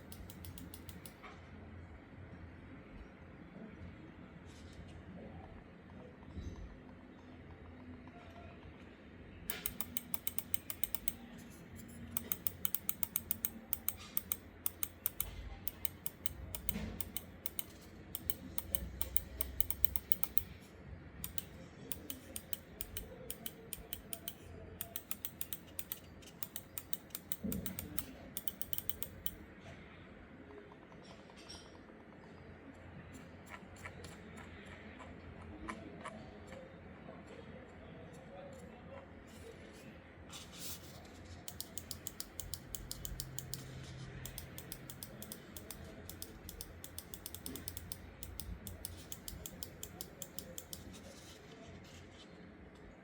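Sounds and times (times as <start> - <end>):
mouse buttons clicking: 0.0 - 1.2, 9.5 - 29.4, 40.6 - 51.3.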